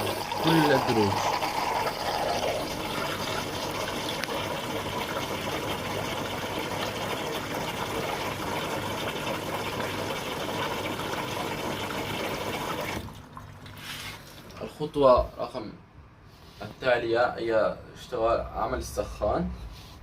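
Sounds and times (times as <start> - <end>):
water rushing into washing machine: 0.0 - 14.7.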